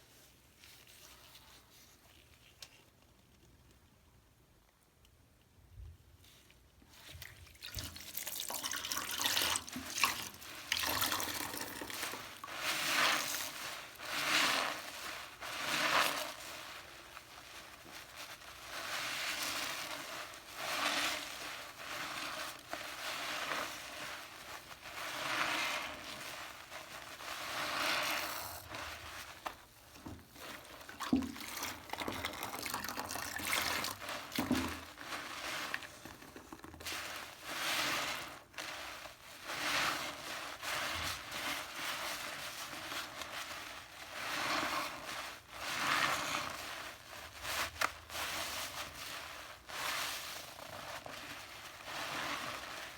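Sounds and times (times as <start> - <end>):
water swishing and splashing: 7.2 - 36.2.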